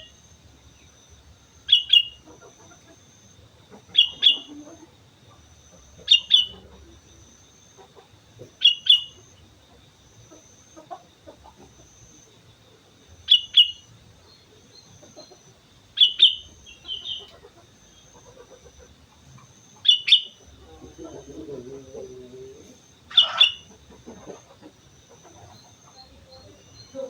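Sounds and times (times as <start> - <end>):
bulbul calling: 1.6 - 12.5, 13.2 - 27.0
faint steady high tone: 25.3 - 27.0.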